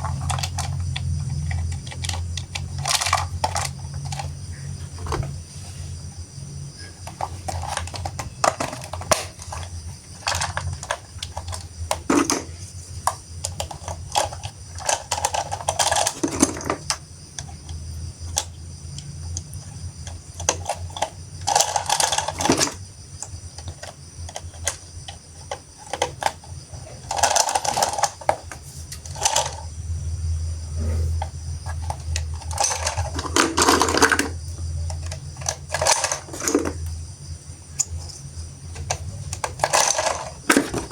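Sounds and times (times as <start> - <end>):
plastic toy parts clattering: 0.0 - 5.4, 7.0 - 29.7, 31.7 - 36.9, 37.8 - 40.9
steady low hum: 26.4 - 40.9.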